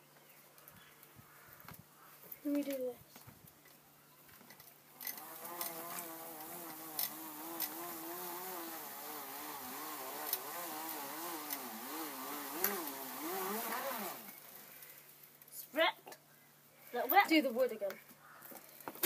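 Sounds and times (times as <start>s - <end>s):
small electric motor buzzing: 5.0s - 14.5s.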